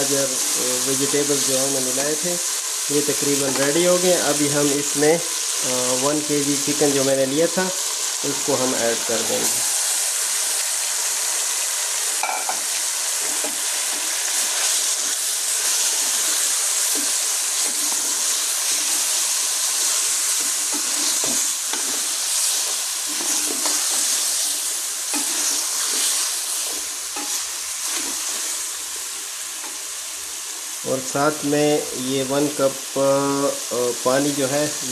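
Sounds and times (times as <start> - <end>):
chicken sizzling in hot oil: 0.0 - 34.9
spoon scraping and knocking pan: 3.4 - 3.8, 12.2 - 28.5.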